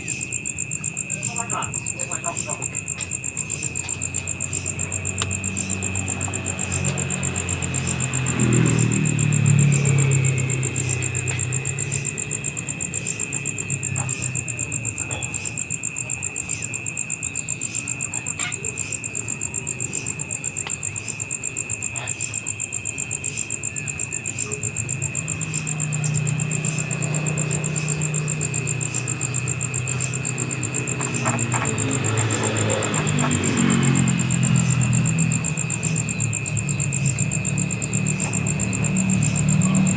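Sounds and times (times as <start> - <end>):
insect trilling: 0.0 - 39.9.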